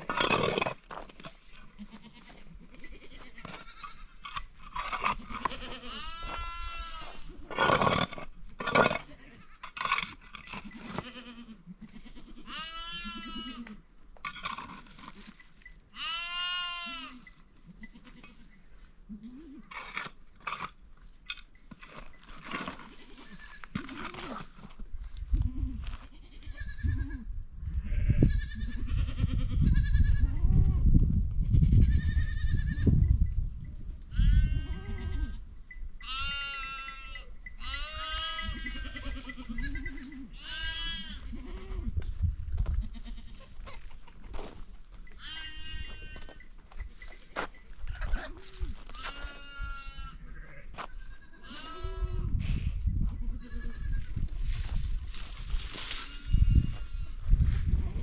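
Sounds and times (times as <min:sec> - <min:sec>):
goats bleating: 0:01.8 - 0:04.2, 0:05.1 - 0:07.8, 0:10.6 - 0:13.8, 0:16.0 - 0:17.2, 0:27.9 - 0:30.4, 0:34.1 - 0:35.4, 0:36.0 - 0:41.9, 0:45.2 - 0:46.4, 0:47.9 - 0:52.3.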